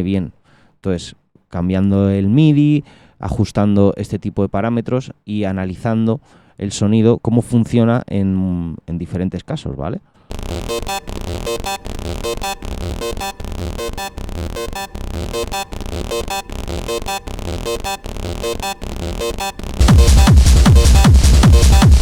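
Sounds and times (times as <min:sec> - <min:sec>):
distorted synth pattern: 0:10.3 - 0:22.0
heavy techno kick drum: 0:10.3 - 0:22.0.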